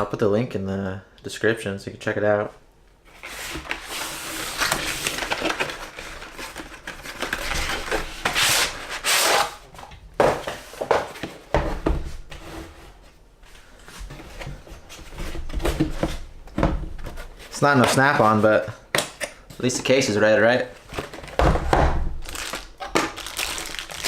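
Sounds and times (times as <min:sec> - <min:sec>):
rubbing and rustling: 0:03.0 - 0:11.4.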